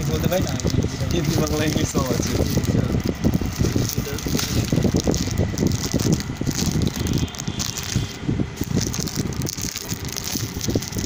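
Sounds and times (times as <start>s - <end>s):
crackling rumble on microphone: 0.0s - 11.0s.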